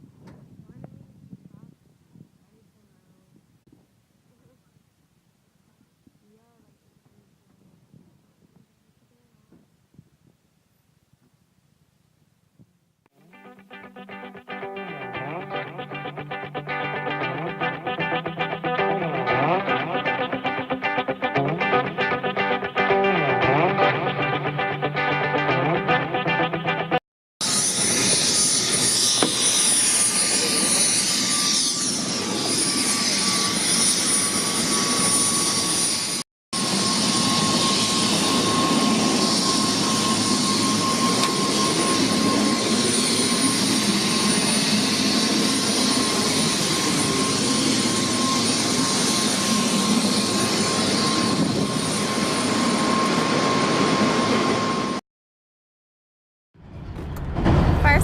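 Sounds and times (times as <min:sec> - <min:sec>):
helicopter engine and rotor noise: 0:27.4 - 0:55.0.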